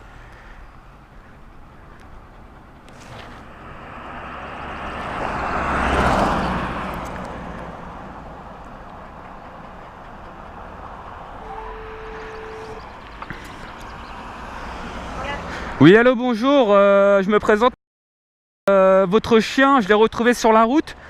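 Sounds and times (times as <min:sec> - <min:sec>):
vehicle passing by: 0:00.0 - 0:15.8.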